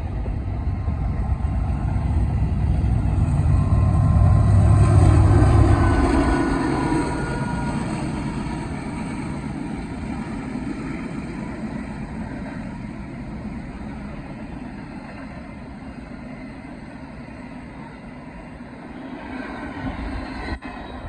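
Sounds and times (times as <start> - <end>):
freight train wheels rumbling: 0.0 - 21.0.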